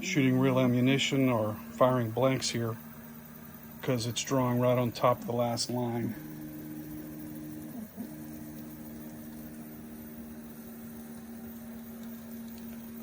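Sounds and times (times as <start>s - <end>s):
stepper motors whining: 3.8s - 13.0s.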